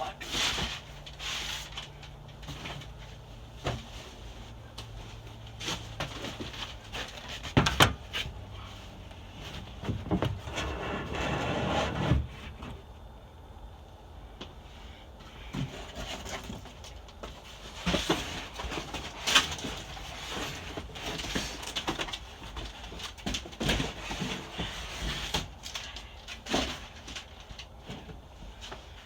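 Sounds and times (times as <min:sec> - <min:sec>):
cardboard boxes thumping and scraping: 0:02.5 - 0:08.7, 0:09.3 - 0:12.8, 0:15.4 - 0:25.7.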